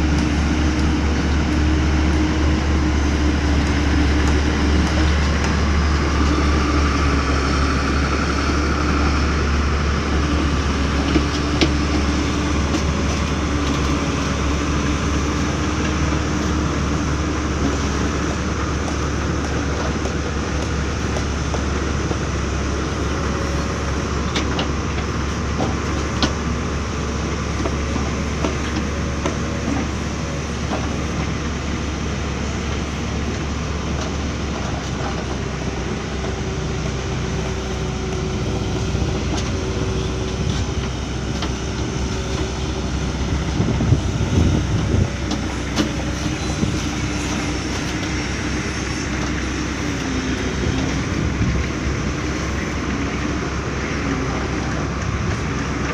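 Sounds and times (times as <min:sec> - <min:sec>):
diesel engine running under load: 0:00.0 - 0:55.9.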